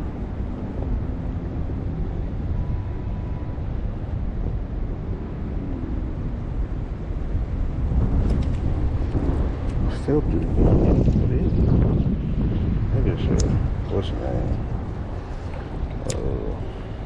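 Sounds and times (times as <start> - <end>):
wind buffeting microphone: 0.0 - 17.0.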